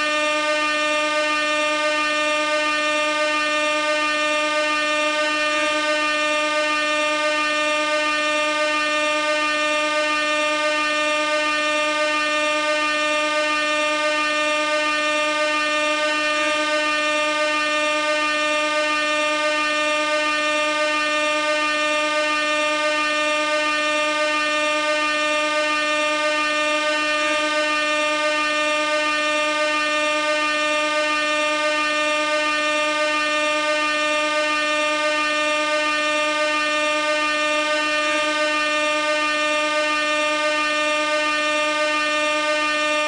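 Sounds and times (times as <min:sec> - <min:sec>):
air horn blast: 0:00.0 - 0:43.0.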